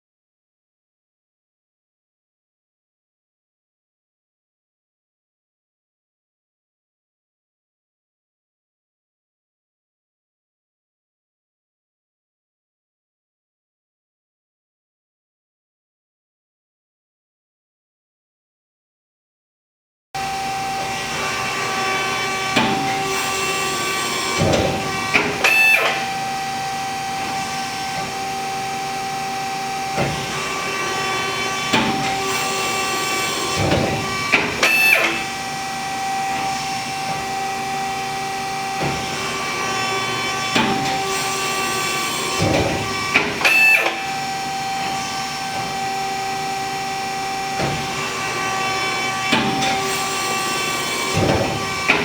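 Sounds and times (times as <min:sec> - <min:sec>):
folding machine humming: 0:20.2 - 0:52.0
mechanical clunks and clicks: 0:22.4 - 0:26.2, 0:33.4 - 0:35.2, 0:42.4 - 0:44.2, 0:51.0 - 0:52.0.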